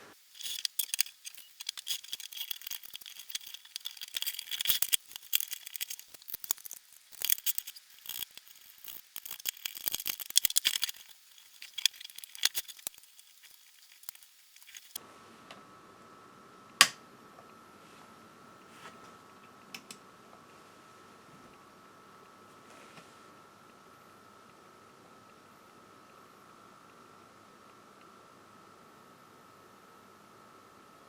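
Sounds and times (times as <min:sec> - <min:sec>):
faint hum with high tone: 0:00.0 - 0:31.0
small hard parts clicking and rattling: 0:00.1 - 0:15.0.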